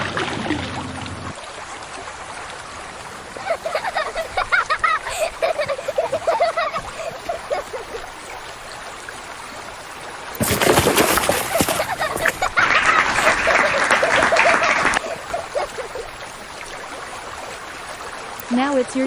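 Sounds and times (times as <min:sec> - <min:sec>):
water splashing: 0:10.4 - 0:18.4.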